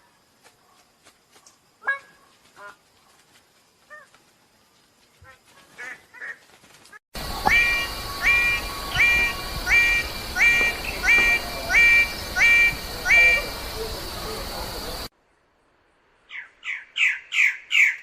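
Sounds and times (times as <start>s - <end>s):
bird-of-paradise calling: 7.2s - 15.1s, 16.3s - 18.0s.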